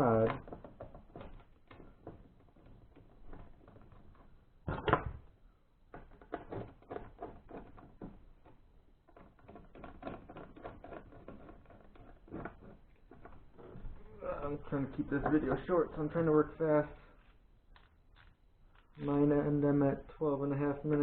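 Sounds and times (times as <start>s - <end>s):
clicks and taps on plastic: 0.2s - 5.3s, 5.9s - 14.0s.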